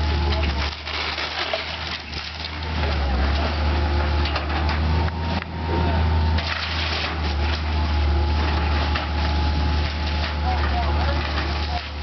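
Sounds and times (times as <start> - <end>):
debris cracking and crunching: 0.0 - 3.6, 6.4 - 12.0
demolition machine engine drone: 0.0 - 12.0.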